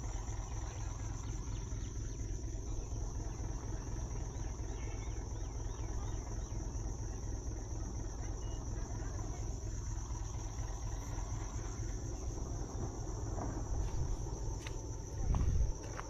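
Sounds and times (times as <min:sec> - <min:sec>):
low rumble: 0:10.2 - 0:16.0.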